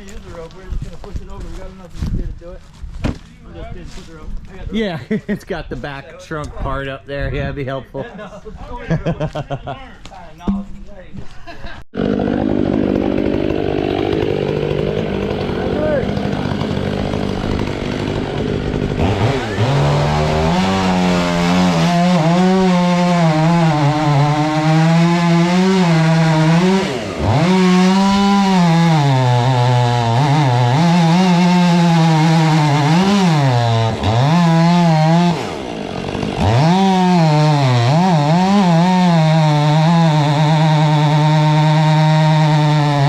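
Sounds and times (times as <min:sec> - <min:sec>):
chainsaw cutting into tree trunk: 0:11.9 - 0:43.0.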